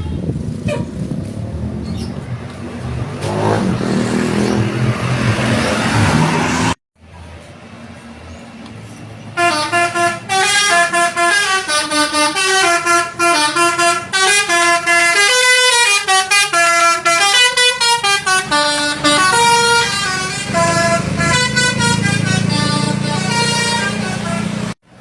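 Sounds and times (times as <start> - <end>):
musical bus horn melody: 0.0 - 1.0, 9.4 - 24.8.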